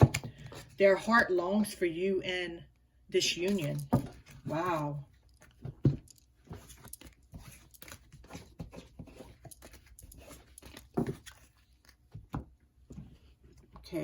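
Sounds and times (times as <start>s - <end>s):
cards shuffling: 3.5s - 12.4s.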